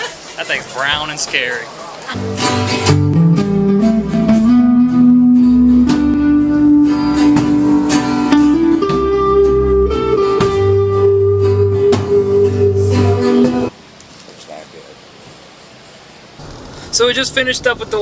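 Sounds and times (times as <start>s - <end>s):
guitar-led band music: 2.1s - 13.7s.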